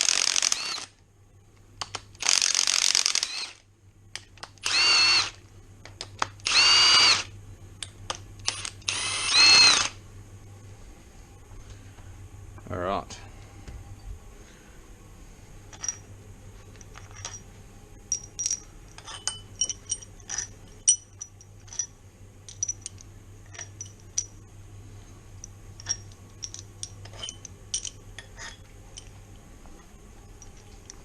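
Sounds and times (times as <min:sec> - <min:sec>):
metal tools clinking: 0:15.7 - 0:16.1, 0:16.7 - 0:17.5, 0:18.1 - 0:24.4, 0:25.4 - 0:29.2, 0:30.4 - 0:31.0.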